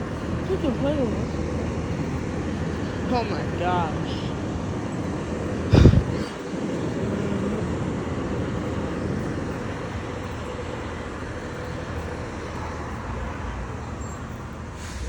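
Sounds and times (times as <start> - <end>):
motor vehicle engine: 0.0 - 15.0
road noise: 0.0 - 15.0.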